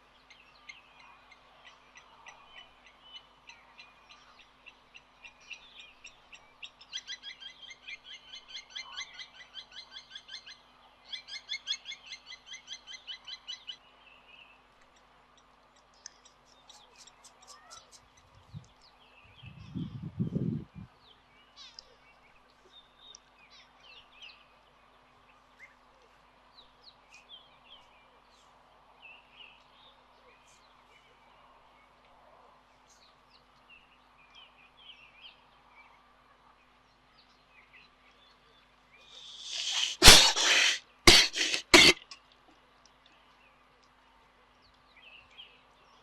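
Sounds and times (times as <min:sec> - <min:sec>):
faint steady hum: 0:00.0 - 0:46.0
faint bird chirps: 0:16.0 - 0:20.0
baboon coughing: 0:39.3 - 0:42.2.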